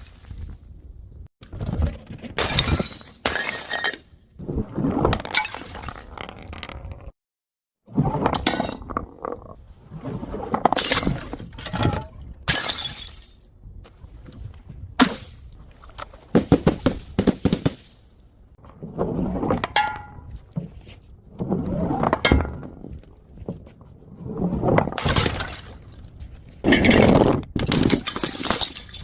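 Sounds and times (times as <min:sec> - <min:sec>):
glass bottles smashing: 0:02.4 - 0:04.0, 0:12.5 - 0:13.5, 0:27.6 - 0:29.0.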